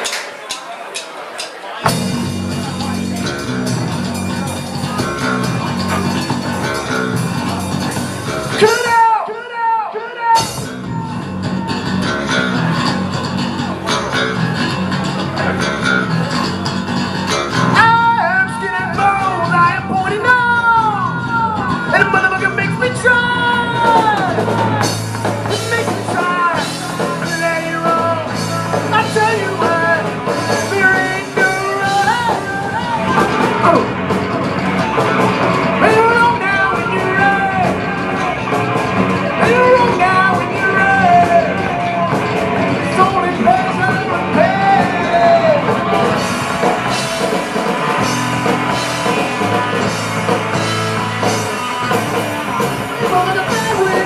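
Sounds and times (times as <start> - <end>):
rock band playing: 0.0 - 54.0
person singing: 17.5 - 34.0, 35.7 - 47.4, 52.6 - 54.0.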